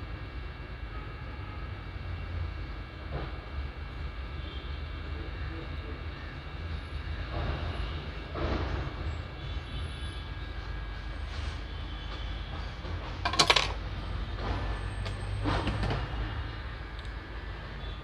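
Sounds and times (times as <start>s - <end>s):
small hard objects clattering: 13.3s - 13.8s.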